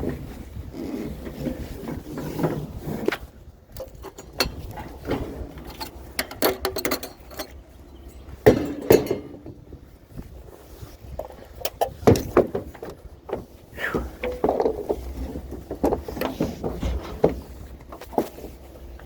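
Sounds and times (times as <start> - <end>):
scrap metal clanking: 1.1 - 9.7.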